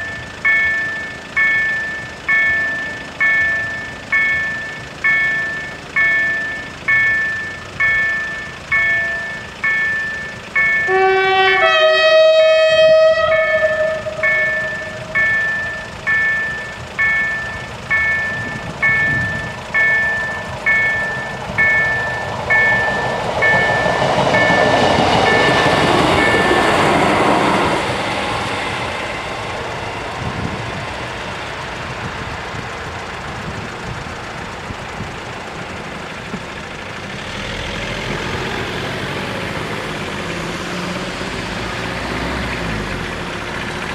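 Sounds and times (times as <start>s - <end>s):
train rushing past: 0.0s - 36.1s
level-crossing warning bell: 0.0s - 37.0s
two-note train horn: 10.8s - 15.3s.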